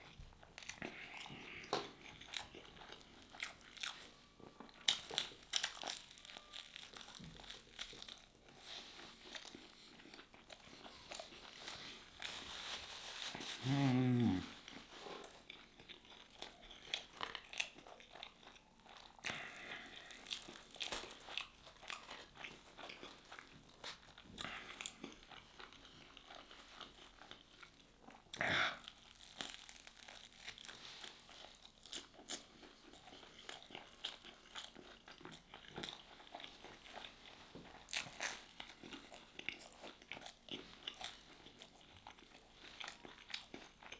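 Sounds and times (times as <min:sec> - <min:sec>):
chewing and crunching crispy food: 0:00.0 - 0:43.9
person humming mmm: 0:13.4 - 0:14.7.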